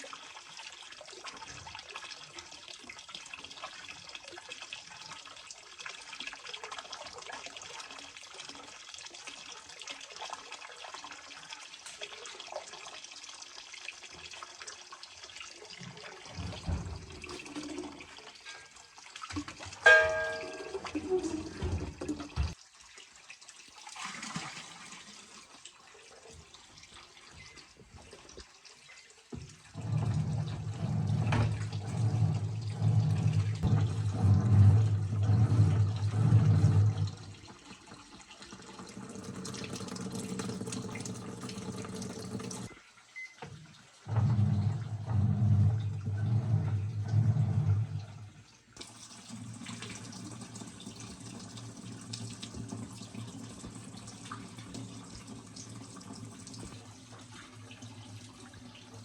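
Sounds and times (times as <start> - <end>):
water flowing into washing machine: 0.0 - 59.0
motor hum: 29.8 - 37.3.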